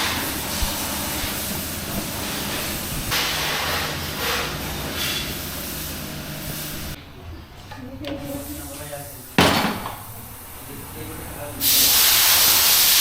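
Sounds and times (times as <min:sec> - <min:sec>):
high-pressure jet hissing: 0:00.0 - 0:07.0, 0:08.3 - 0:13.0
low motor hum: 0:00.0 - 0:08.0.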